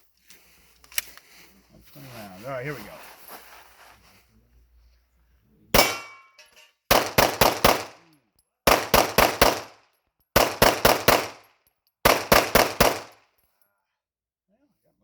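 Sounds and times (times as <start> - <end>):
pistol shots: 5.8 - 6.2, 6.9 - 8.0, 8.7 - 9.8, 10.4 - 13.2.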